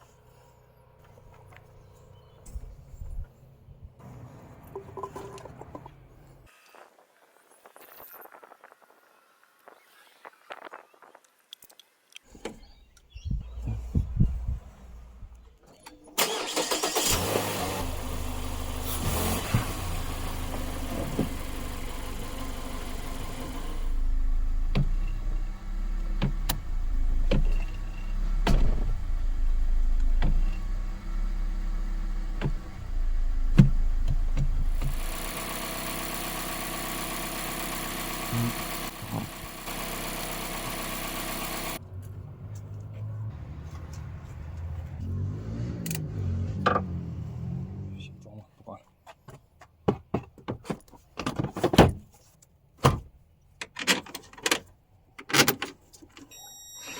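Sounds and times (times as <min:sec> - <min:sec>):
car engine starting and running: 0:13.4 - 0:48.3.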